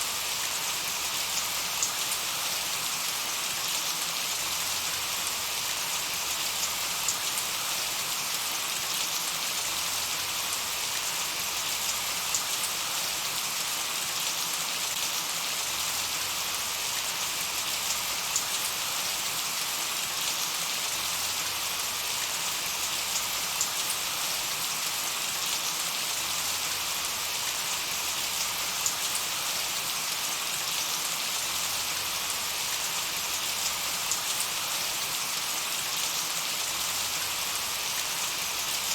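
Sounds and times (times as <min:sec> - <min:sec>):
light rain pattering: 0:00.0 - 0:38.9.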